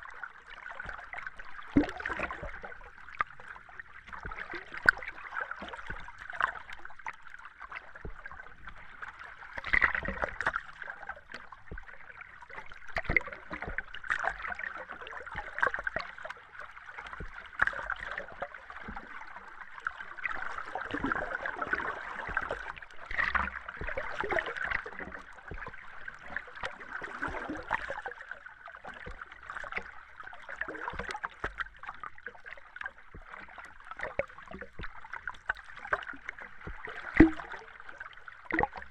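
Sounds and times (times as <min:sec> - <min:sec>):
muffled underwater wash: 0:00.0 - 0:38.9
bubbling: 0:19.8 - 0:27.8.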